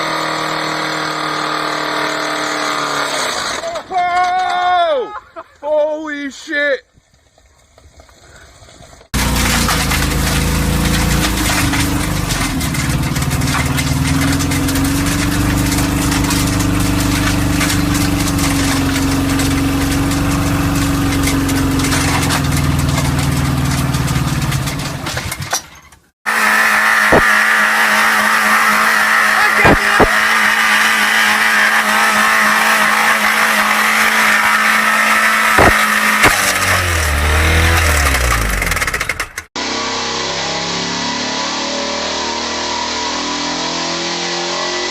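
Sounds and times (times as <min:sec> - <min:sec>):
car engine revving high: 0:00.0 - 0:03.6, 0:09.2 - 0:24.8, 0:26.3 - 0:44.9
high engine whine: 0:09.1 - 0:25.4, 0:26.3 - 0:44.9
sharp engine knocks: 0:09.1 - 0:26.1, 0:31.7 - 0:39.5.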